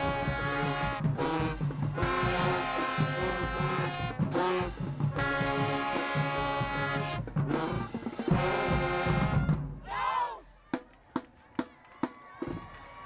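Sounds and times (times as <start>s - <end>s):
brass band playing held chords: 0.0s - 10.2s.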